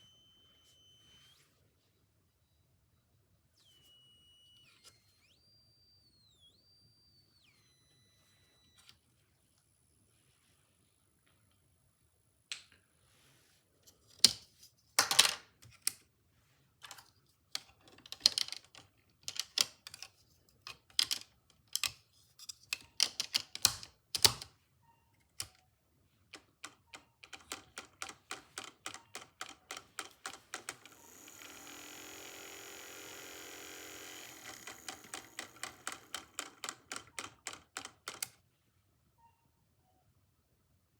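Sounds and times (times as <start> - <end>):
high-pitched electronic whine: 3.6 - 8.8
electronic kit parts clicking: 33.2 - 38.4.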